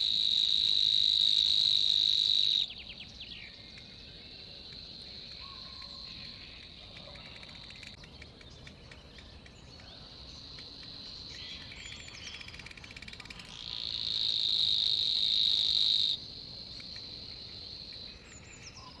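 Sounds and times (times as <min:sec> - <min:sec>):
insects trilling: 0:00.0 - 0:19.0
faint bird chirps: 0:02.6 - 0:14.5.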